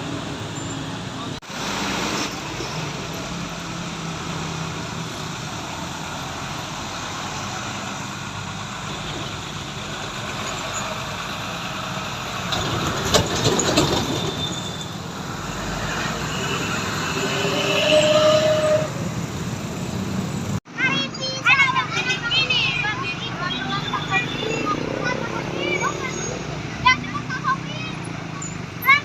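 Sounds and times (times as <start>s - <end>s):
trucks rumbling past: 0.0s - 29.0s
truck rattling and clanking: 7.7s - 16.3s.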